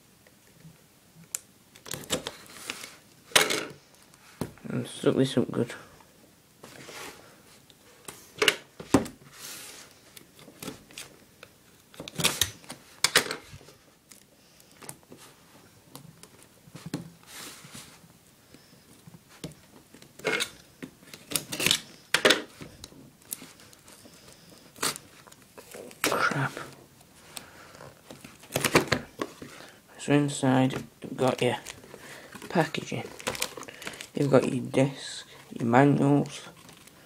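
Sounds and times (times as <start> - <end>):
packing tape tearing: 11.9 - 13.2, 20.1 - 21.9, 24.6 - 26.3.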